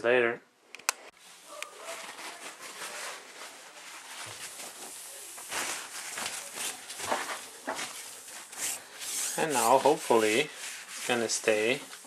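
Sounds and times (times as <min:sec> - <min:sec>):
cloth wiping steel tool chest: 0:07.8 - 0:12.0.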